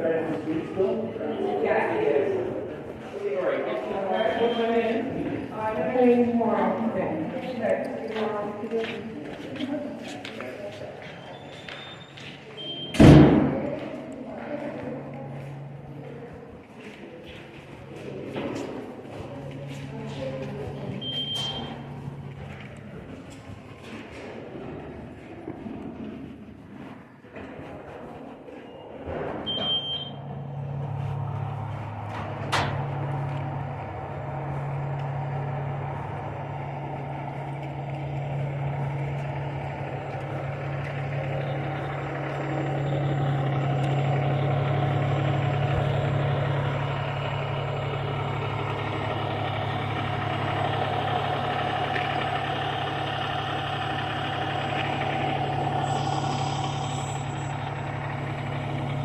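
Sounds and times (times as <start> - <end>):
vehicle engine idling: 0.0 - 59.0
high beep: 4.1 - 4.9, 11.3 - 13.0, 21.0 - 21.8, 29.5 - 30.2.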